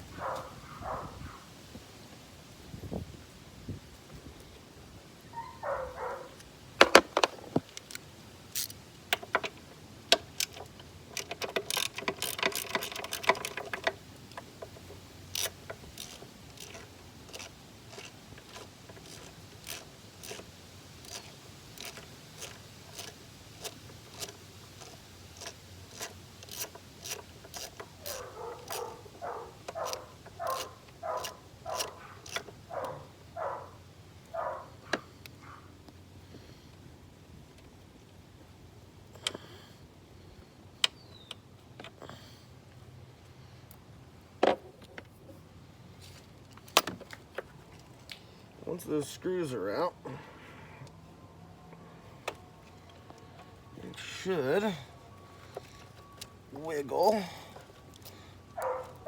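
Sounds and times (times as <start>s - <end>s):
ratchet wrench clicking: 7.2s - 28.9s, 29.6s - 32.6s.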